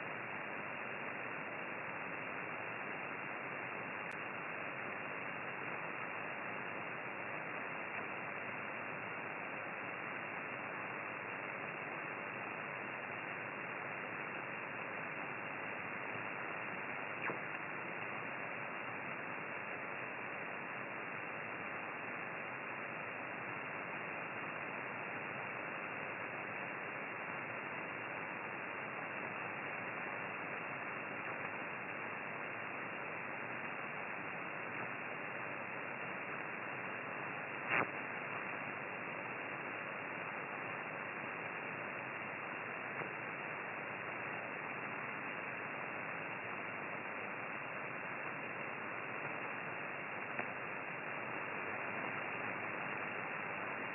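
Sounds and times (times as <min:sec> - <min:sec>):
radio receiver hiss: 0:00.0 - 0:53.9
sharp click: 0:37.7 - 0:38.0.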